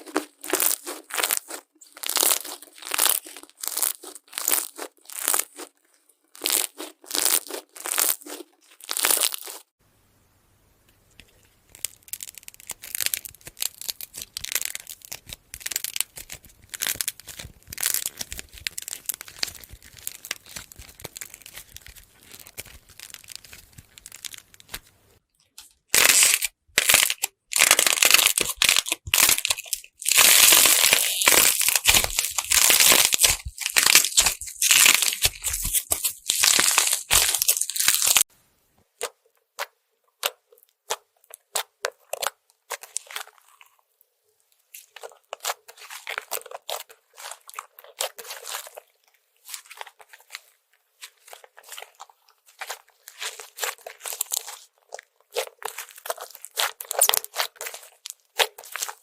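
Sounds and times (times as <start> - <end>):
slime clicking and crackling: 0.0 - 5.7, 6.4 - 9.6, 11.7 - 24.8, 25.9 - 38.3, 39.0 - 43.8, 44.7 - 59.0.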